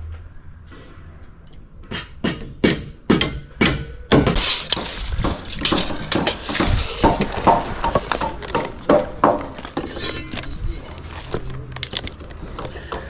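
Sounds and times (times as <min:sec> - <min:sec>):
hammer striking nails into wood: 0:01.9 - 0:09.8.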